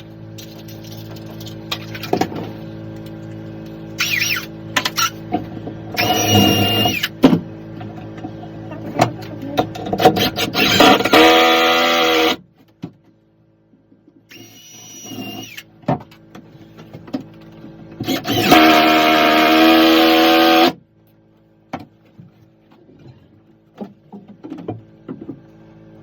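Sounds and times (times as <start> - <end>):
power tool motor running: 3.9 - 5.3, 5.9 - 7.2, 10.0 - 12.4, 14.3 - 15.7, 18.0 - 20.8.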